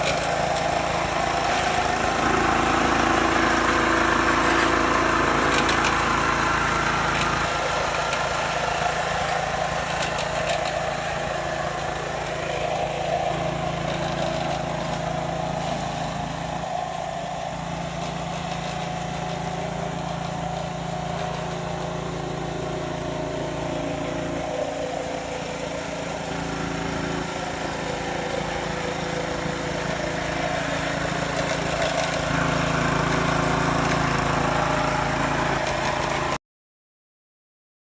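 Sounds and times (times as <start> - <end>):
grass mower engine running: 0.0 - 36.4.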